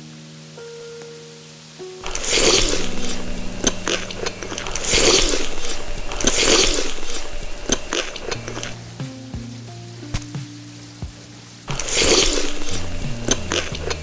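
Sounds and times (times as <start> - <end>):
crunchy food chewing: 2.0 - 8.8, 11.7 - 14.0.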